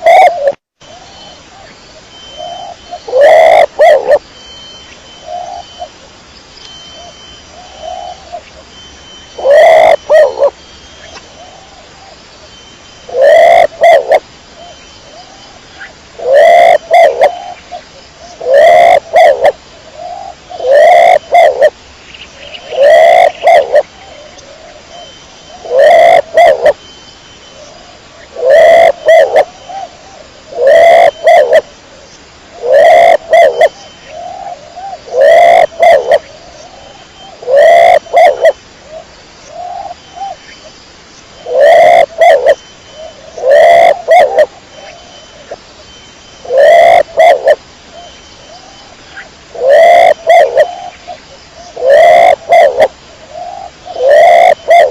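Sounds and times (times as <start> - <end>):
pigeon cooing: 0.0 - 0.6, 2.4 - 4.2, 9.4 - 10.5, 13.1 - 14.2, 16.2 - 17.6, 18.4 - 19.6, 20.2 - 21.7, 22.6 - 24.8, 25.6 - 26.8, 28.3 - 29.9, 30.5 - 31.7, 32.6 - 36.3, 37.4 - 38.6, 41.4 - 45.5, 46.4 - 47.6, 49.6 - 50.9, 51.8 - 54.9.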